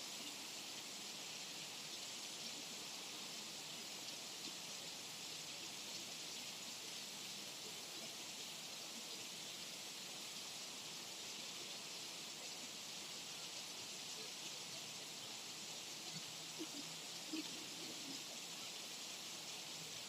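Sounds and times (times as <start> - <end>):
light rain hissing: 0.0 - 20.0.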